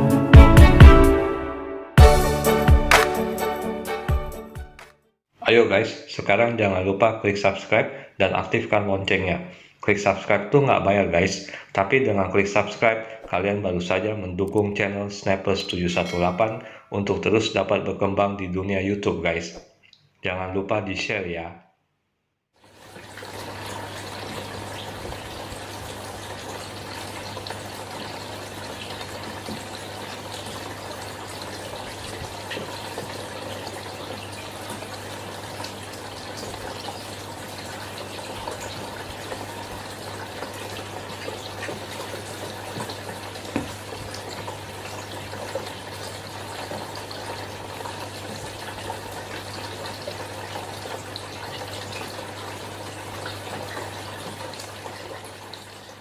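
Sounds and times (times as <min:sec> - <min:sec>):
pump motor low hum: 0:22.7 - 0:56.0
sharp tap: 0:43.5 - 0:43.8.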